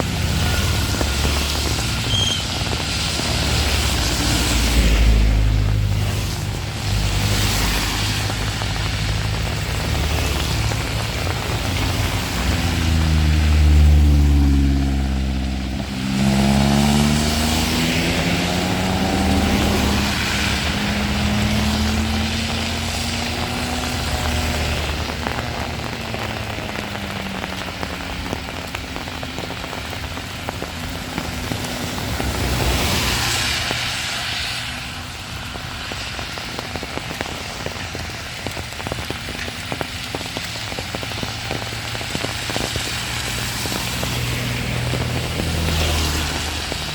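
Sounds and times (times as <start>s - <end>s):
steady rain hiss: 0.0s - 46.9s.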